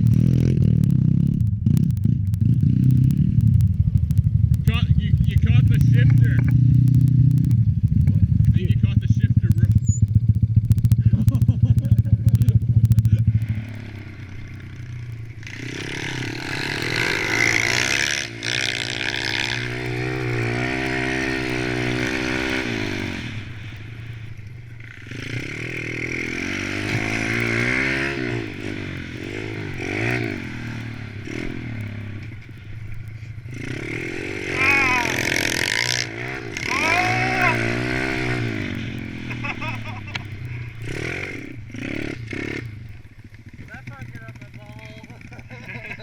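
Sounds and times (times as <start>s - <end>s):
pit bike engines revving: 0.0s - 46.0s.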